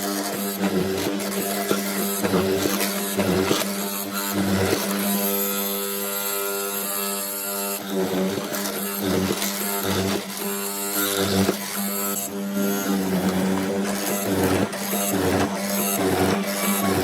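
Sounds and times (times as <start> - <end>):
power tool motor humming: 0.0 - 17.0.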